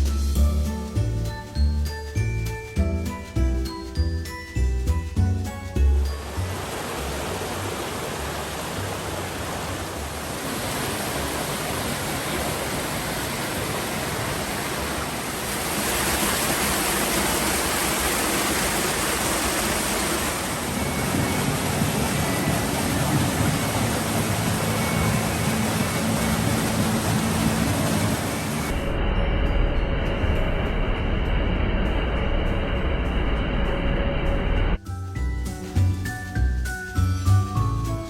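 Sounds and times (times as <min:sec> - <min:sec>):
rushing creek and waterfall: 0:06.1 - 0:28.8.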